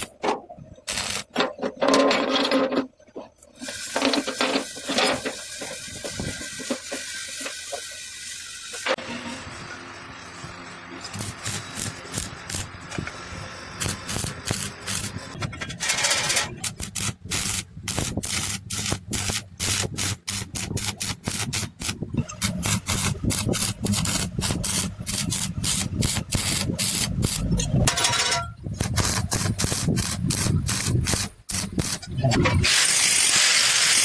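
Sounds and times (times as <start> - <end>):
rasping sanding strokes: 13.8 - 27.5.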